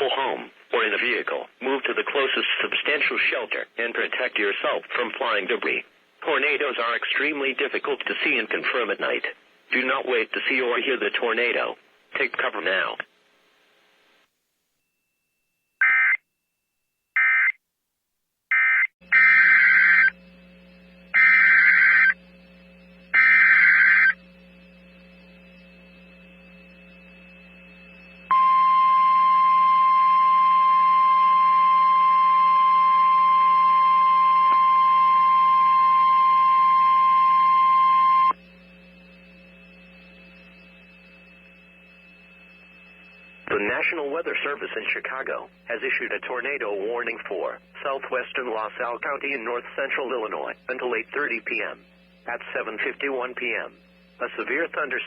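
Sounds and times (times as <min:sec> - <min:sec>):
data bursts: 0:18.5 - 0:20.2, 0:21.1 - 0:22.2, 0:23.1 - 0:24.2
steady alarm tone: 0:18.5 - 0:20.2, 0:21.1 - 0:22.2, 0:23.1 - 0:24.3, 0:26.6 - 0:38.4
low hum: 0:19.4 - 0:44.4.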